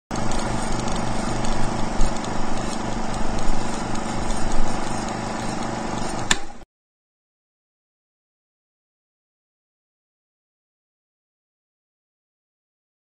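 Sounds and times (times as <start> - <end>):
pulsing machine hum: 0.1 - 6.6
sharp click: 5.0 - 6.6.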